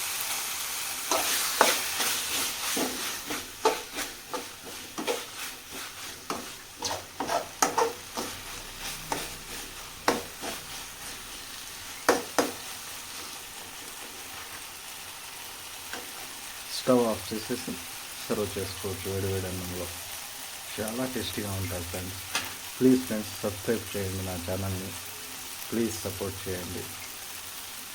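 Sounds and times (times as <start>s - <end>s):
light frying sizzle: 0.0s - 27.9s
spoon scraping a pan: 1.0s - 14.7s.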